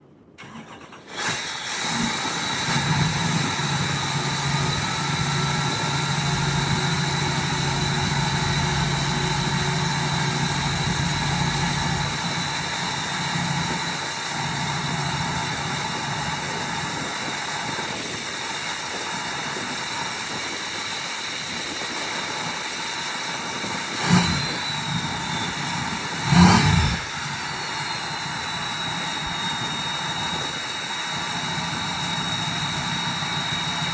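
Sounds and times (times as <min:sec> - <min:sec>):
engine revving: 0:00.4 - 0:18.1, 0:23.9 - 0:33.9
diesel engine starting and idling: 0:00.4 - 0:33.9
turbo whistle: 0:02.0 - 0:17.8, 0:23.9 - 0:33.9.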